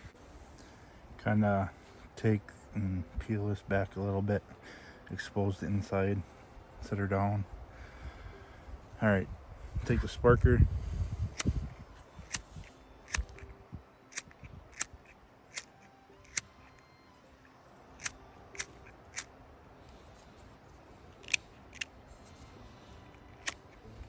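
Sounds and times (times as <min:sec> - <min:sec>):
flint wheel sparker clicks: 0:11.3 - 0:11.6, 0:12.2 - 0:13.5, 0:14.1 - 0:16.8, 0:18.0 - 0:19.3, 0:21.2 - 0:21.9, 0:23.1 - 0:23.8.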